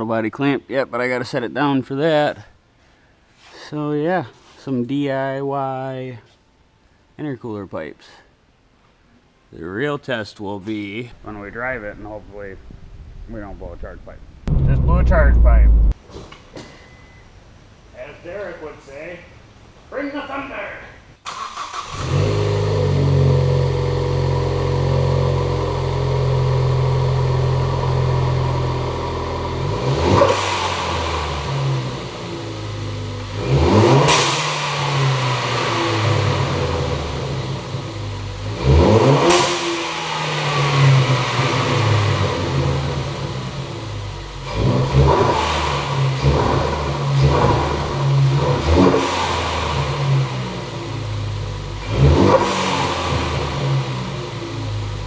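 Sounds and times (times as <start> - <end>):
car engine idling and revving: 14.5 - 16.0, 21.8 - 55.0.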